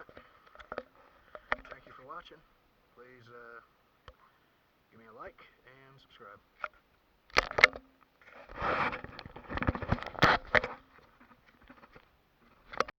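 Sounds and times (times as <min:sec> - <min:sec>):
sharp clicks and knocks: 0:00.0 - 0:01.9, 0:06.6 - 0:12.9
scraping and rustling: 0:07.6 - 0:12.9.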